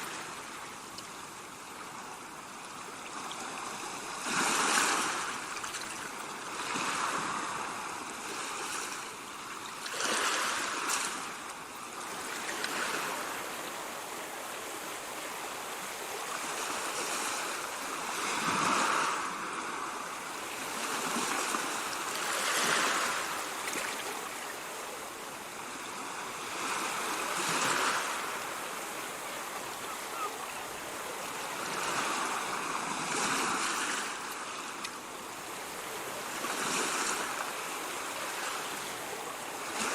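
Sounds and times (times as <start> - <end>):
ocean waves breaking: 0.0 - 39.9.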